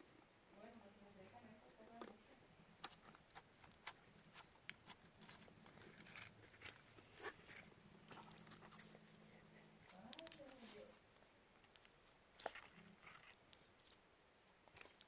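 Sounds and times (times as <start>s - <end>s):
slime being squished: 2.8s - 9.1s.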